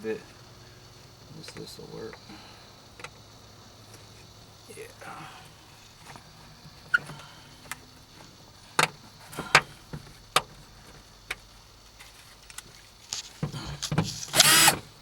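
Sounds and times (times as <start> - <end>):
scraping on plastic: 13.1 - 14.4.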